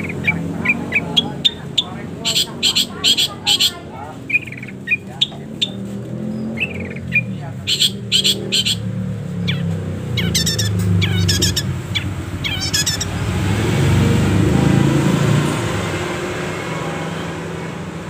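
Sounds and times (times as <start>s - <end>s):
shrike chattering: 0.0s - 13.6s
low engine hum: 0.0s - 18.0s
vehicle passing: 0.0s - 18.0s.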